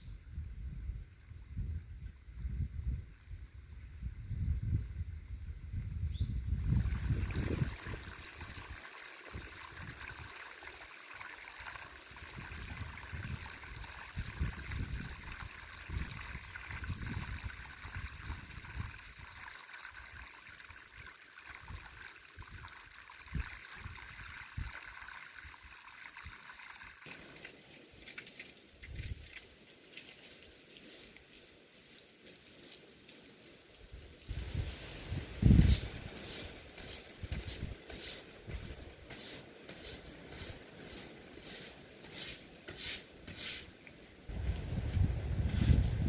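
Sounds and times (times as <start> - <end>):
running water rushing: 6.6 - 31.5.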